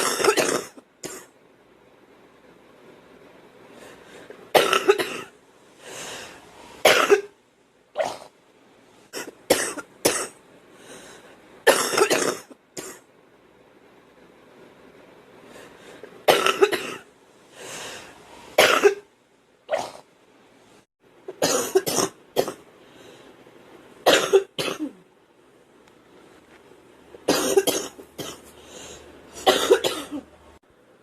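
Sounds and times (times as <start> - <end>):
girl coughing: 0.0 - 1.3, 4.6 - 5.3, 6.9 - 7.4, 9.2 - 10.4, 11.7 - 13.0, 16.3 - 17.1, 18.6 - 19.1, 21.4 - 22.6, 24.1 - 25.0, 27.3 - 28.5, 29.4 - 30.3.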